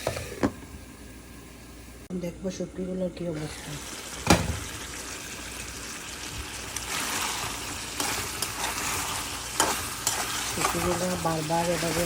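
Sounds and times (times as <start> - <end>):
fish sizzling in oil: 3.4 - 12.0
clank on pan: 4.2 - 4.7.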